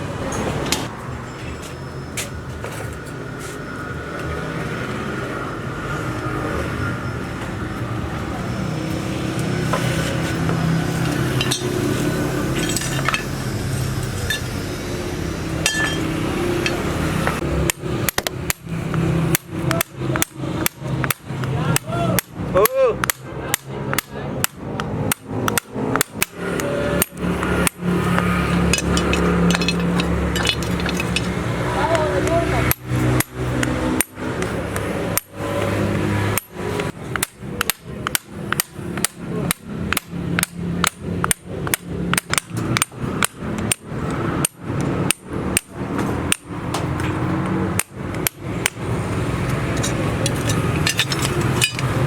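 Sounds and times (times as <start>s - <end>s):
hammer striking metal: 9.6s - 14.6s, 15.5s - 31.6s, 35.1s - 52.0s.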